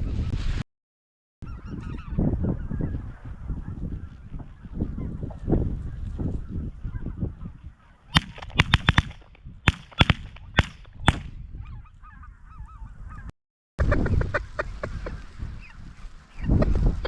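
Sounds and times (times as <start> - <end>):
wind noise: 0.0 - 0.6, 1.4 - 17.0
rapid sharp cracks: 8.2 - 11.4.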